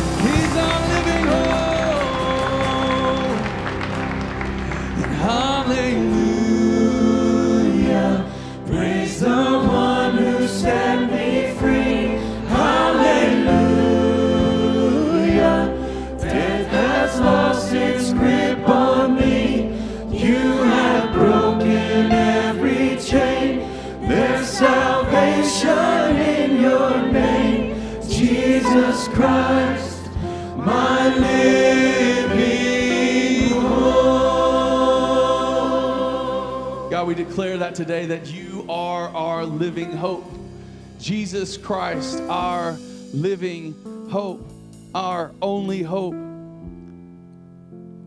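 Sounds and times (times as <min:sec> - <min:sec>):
drum and cymbal hits: 0:00.0 - 0:02.8
live band with bass: 0:00.0 - 0:36.0
singers leading gospel song: 0:00.0 - 0:46.2.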